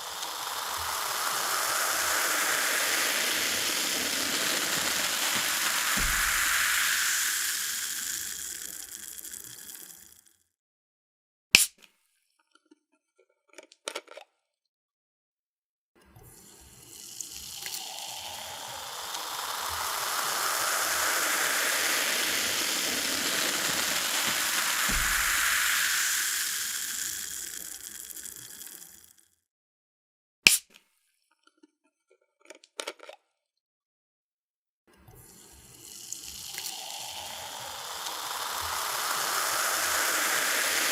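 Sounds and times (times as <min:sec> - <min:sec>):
fizzy drink pouring: 0:00.0 - 0:10.3, 0:16.3 - 0:29.2, 0:35.2 - 0:40.9.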